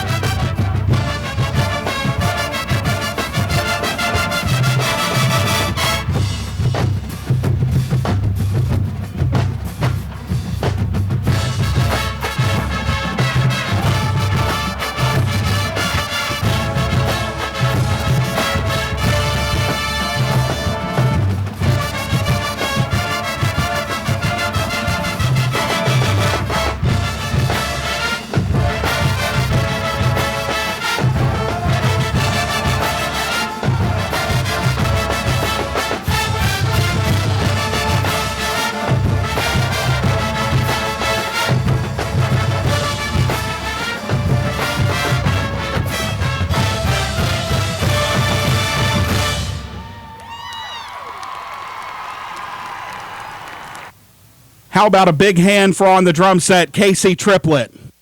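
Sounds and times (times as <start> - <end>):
brass and winds holding chords: 0.0 - 7.3, 11.2 - 50.0
marching drums: 0.0 - 54.0.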